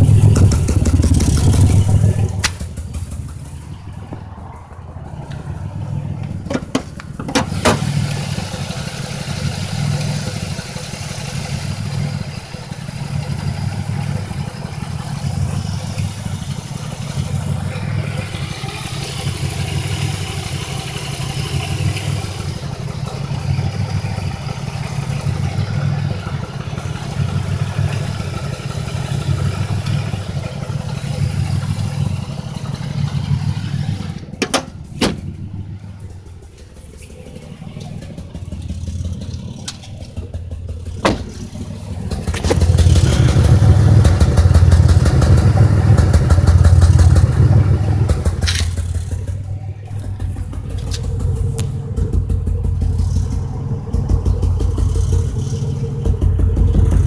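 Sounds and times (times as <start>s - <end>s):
car engine stuttering: 0.0s - 57.0s.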